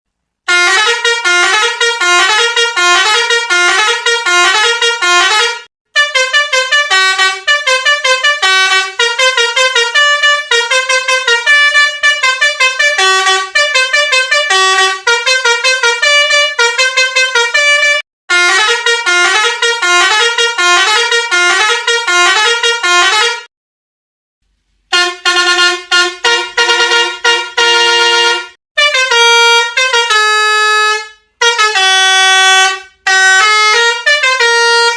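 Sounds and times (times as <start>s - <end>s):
musical bus horn playing tunes: 0.5s - 23.5s, 24.9s - 34.9s.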